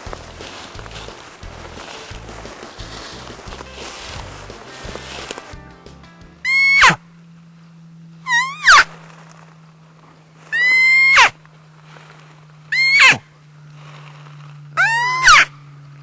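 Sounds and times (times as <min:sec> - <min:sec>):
steady low hum: 0:00.0 - 0:16.0
high whistling elk calls: 0:06.4 - 0:07.0, 0:08.2 - 0:09.0, 0:10.5 - 0:11.4, 0:12.7 - 0:13.2, 0:14.8 - 0:15.6.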